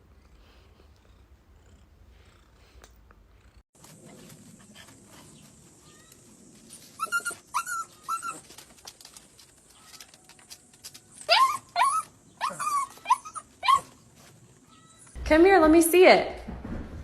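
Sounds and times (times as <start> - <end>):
dog high-pitched cries: 6.9 - 8.6, 11.1 - 14.0.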